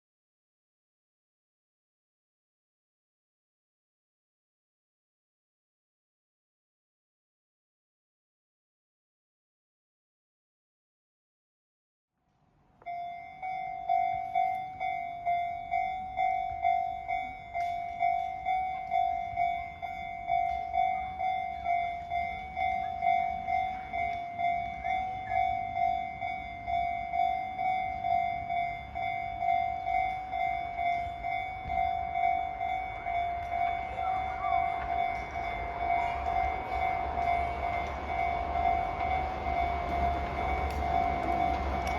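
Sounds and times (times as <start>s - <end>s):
level-crossing warning bell ringing: 12.8s - 41.9s.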